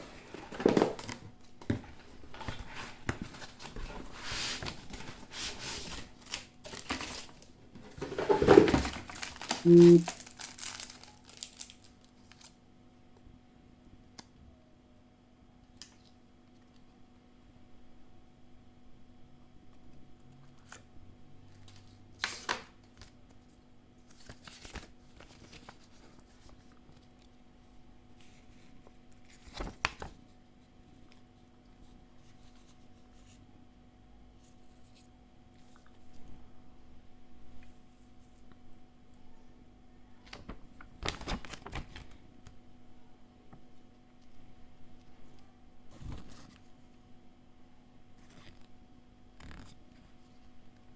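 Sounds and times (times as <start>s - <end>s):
packaging rustling and crinkling: 0.0s - 12.6s
faint steady hum: 0.0s - 50.9s.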